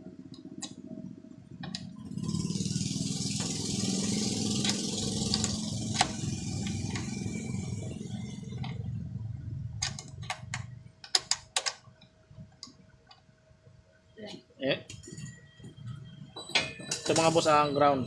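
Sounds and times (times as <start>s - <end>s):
engine-like rumble: 1.9s - 10.9s
metallic clicks and knocks: 9.8s - 13.3s.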